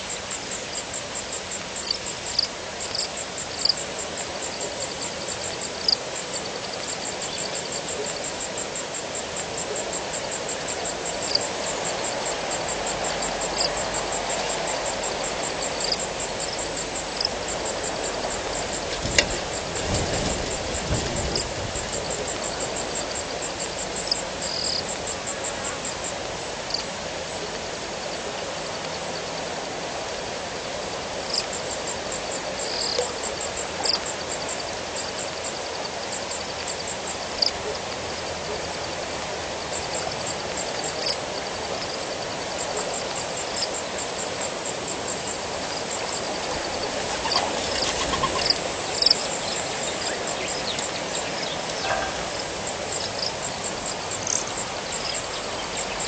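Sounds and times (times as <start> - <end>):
crickets trilling: 0.0 - 56.0
steady hiss: 0.0 - 56.0
frog calls: 31.3 - 38.9, 39.7 - 56.0.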